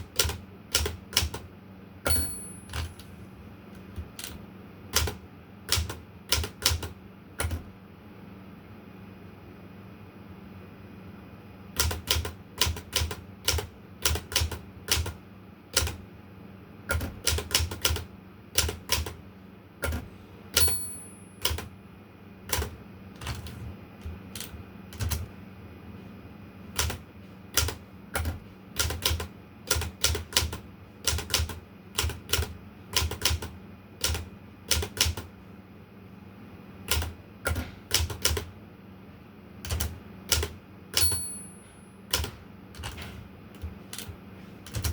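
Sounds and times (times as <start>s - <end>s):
typewriter key strikes: 0.0s - 1.4s, 2.0s - 3.1s, 4.0s - 7.7s, 11.8s - 16.0s, 16.9s - 19.2s, 19.8s - 21.7s, 22.5s - 25.3s, 27.6s - 35.3s, 36.9s - 38.5s, 39.6s - 44.9s
typewriter bell ring: 2.1s - 3.0s, 20.6s - 21.6s, 41.0s - 41.9s.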